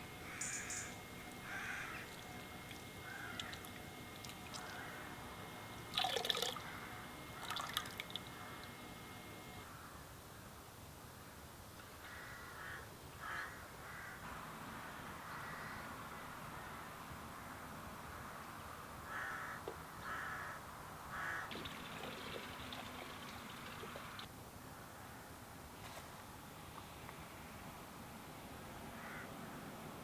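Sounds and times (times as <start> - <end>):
bird calling: 0.0 - 9.6, 12.2 - 16.9, 18.1 - 24.3, 28.9 - 29.7
steady hiss: 0.0 - 9.7, 14.2 - 19.2, 20.7 - 24.3.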